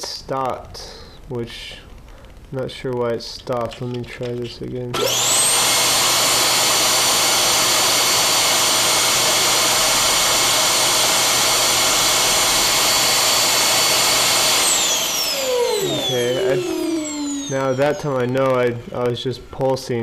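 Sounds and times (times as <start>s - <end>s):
vacuum cleaner motor whining: 4.9s - 20.0s.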